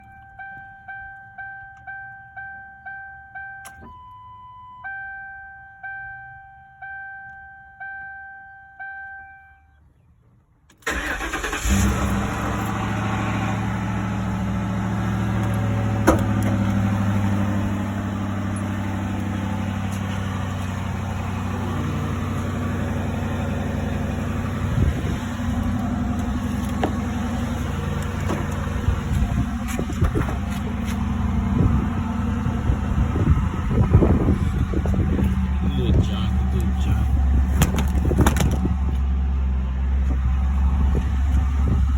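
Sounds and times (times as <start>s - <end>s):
car engine starting and running: 0.0s - 4.8s, 10.6s - 41.9s
longer warning tone: 0.0s - 9.7s
car warning chime: 0.0s - 9.8s.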